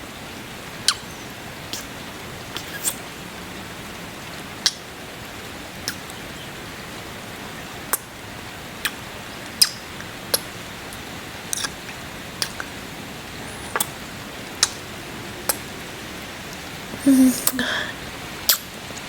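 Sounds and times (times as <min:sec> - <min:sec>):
rain: 0:00.0 - 0:19.0
wet kisses: 0:00.9 - 0:01.9, 0:02.6 - 0:03.0, 0:04.6 - 0:04.8, 0:05.8 - 0:06.2, 0:08.8 - 0:09.0, 0:09.6 - 0:10.5, 0:11.5 - 0:11.8, 0:12.4 - 0:12.8, 0:13.5 - 0:14.0, 0:14.6 - 0:14.8, 0:15.5 - 0:15.7, 0:18.5 - 0:19.0.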